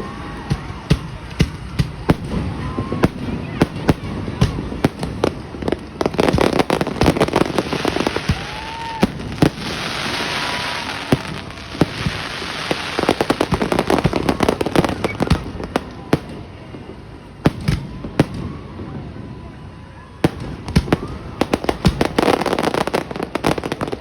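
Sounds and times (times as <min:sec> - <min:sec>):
fireworks bangs: 0:00.0 - 0:24.0
fireworks crackling: 0:00.0 - 0:24.0
short firework whistles: 0:06.0 - 0:16.6.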